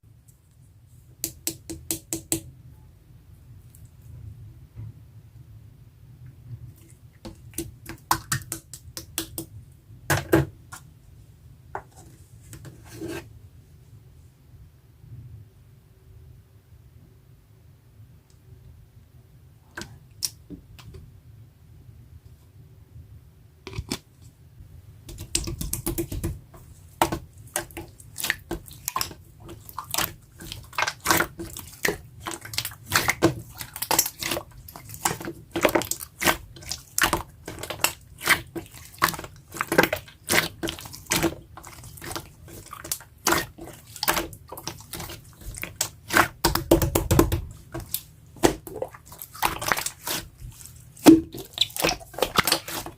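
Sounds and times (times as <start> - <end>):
slime squishing with wet pops: 6.8 - 9.6, 25.1 - 52.9.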